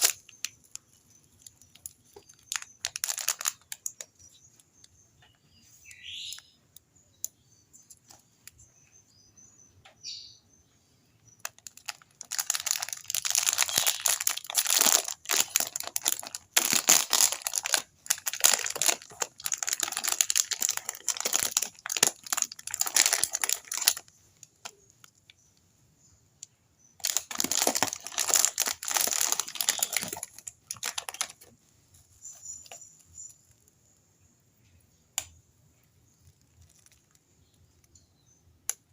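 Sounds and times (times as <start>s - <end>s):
packaging crinkling: 0.0s - 4.6s, 11.4s - 24.8s, 27.0s - 33.6s, 36.2s - 37.3s.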